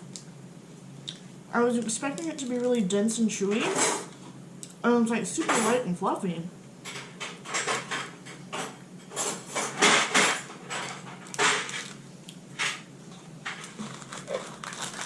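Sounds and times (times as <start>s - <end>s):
person chewing candy: 13.7s - 15.0s.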